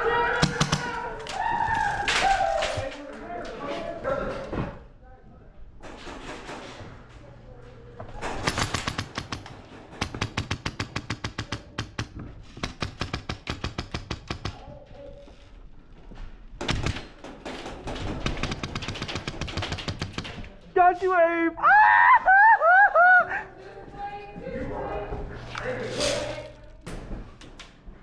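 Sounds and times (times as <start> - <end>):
airsoft gun rapid shots: 0.4 - 1.0, 8.4 - 14.6, 16.6 - 17.1, 18.2 - 20.4.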